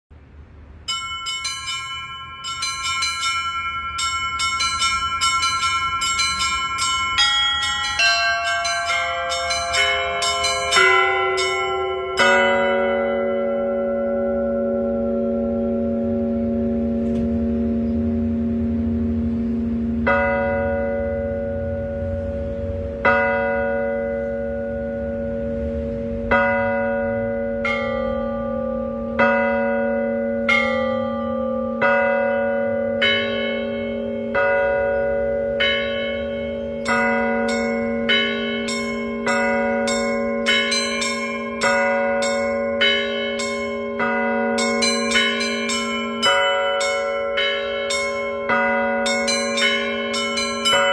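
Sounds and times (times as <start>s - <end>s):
church bells striking: 0.7s - 50.9s
small high bells ringing: 0.9s - 16.4s, 20.1s - 50.9s
low bell tone humming: 0.9s - 50.9s.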